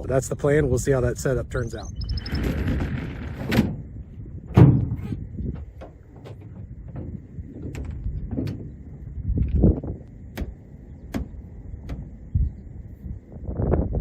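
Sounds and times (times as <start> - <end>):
low thumps and rumble: 1.6 - 14.0
gear clicks and knocks: 4.5 - 12.1.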